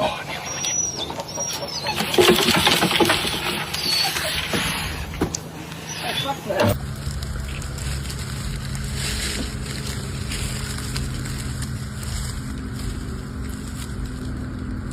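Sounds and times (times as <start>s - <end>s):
motor droning: 4.4s - 14.9s.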